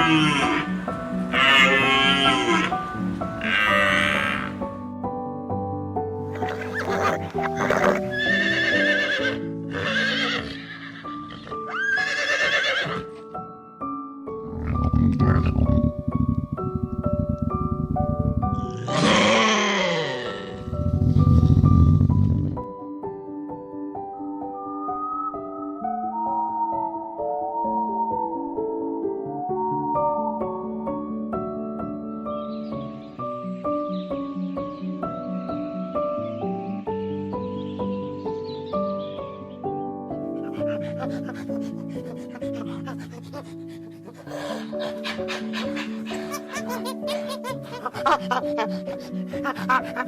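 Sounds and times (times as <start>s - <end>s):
horse whinnying: 0.0s - 4.6s, 6.3s - 13.2s, 14.5s - 22.5s
soft background music: 0.0s - 50.0s.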